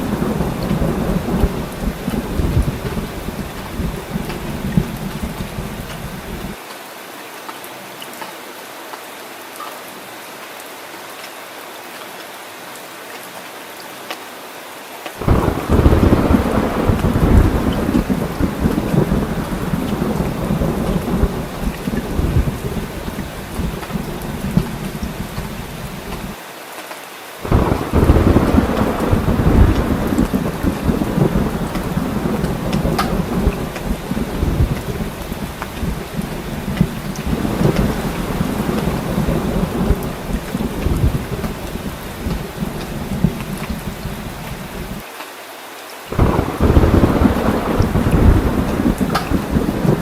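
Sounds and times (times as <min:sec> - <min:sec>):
low rumble of thunder: 0:00.0 - 0:06.6, 0:15.2 - 0:26.4, 0:27.4 - 0:45.0, 0:46.1 - 0:50.0
steady rain falling: 0:00.0 - 0:50.0.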